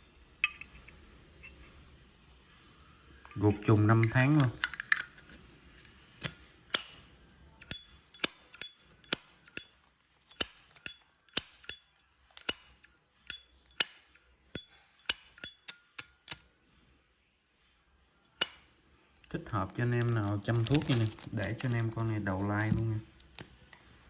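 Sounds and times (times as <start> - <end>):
lighter lid clicking open and shut: 6.2 - 7.0, 7.7 - 9.3, 10.3 - 11.8, 14.6 - 16.4, 18.3 - 18.7.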